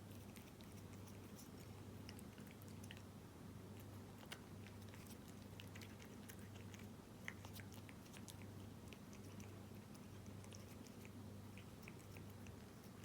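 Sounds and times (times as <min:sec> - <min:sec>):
cat chewing wet food: 0:00.0 - 0:13.0.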